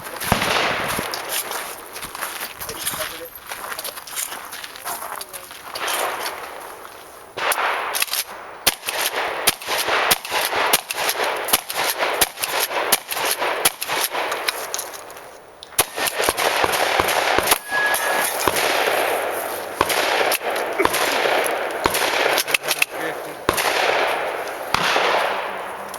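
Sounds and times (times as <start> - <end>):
shotgun firing rapidly: 0.0 - 1.3, 8.7 - 14.3, 15.8 - 25.8.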